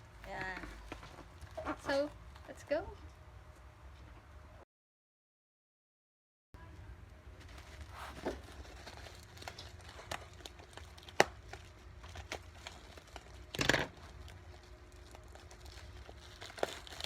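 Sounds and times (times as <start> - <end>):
plastic and paper crinkling: 7.4 - 17.0.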